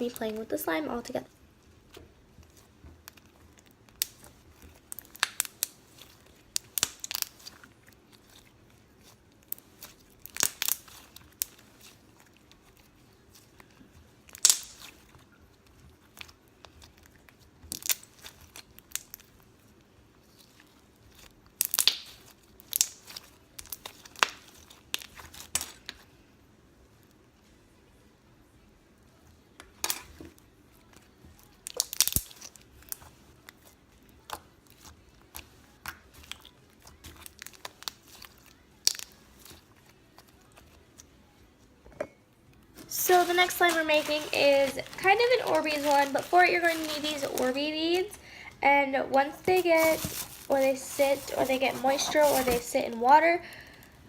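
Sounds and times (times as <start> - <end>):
slime crackling pops: 3.0 - 7.5, 9.4 - 12.0, 14.3 - 15.1, 21.1 - 26.0, 31.6 - 33.6.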